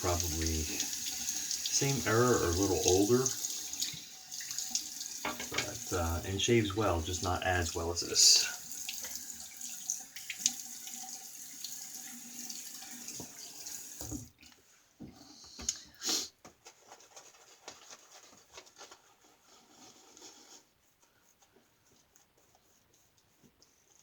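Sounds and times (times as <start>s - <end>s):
tap running into a sink: 0.0s - 6.0s, 12.4s - 14.3s.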